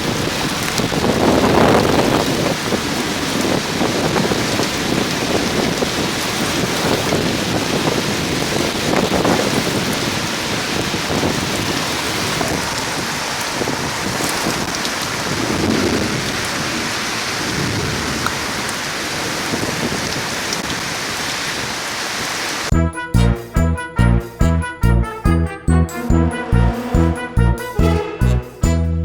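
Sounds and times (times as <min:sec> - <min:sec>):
heavy rain pouring: 0:00.0 - 0:22.7.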